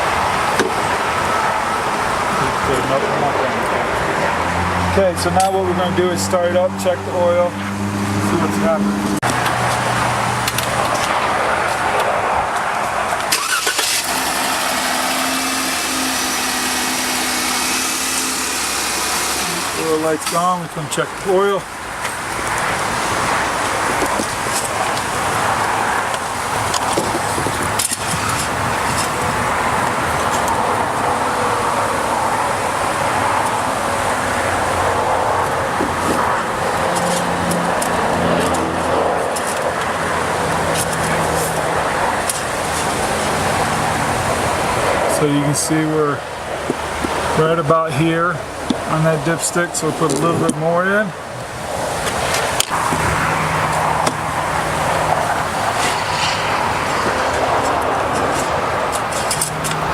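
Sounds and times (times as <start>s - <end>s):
car engine starting and idling: 12.6s - 21.0s.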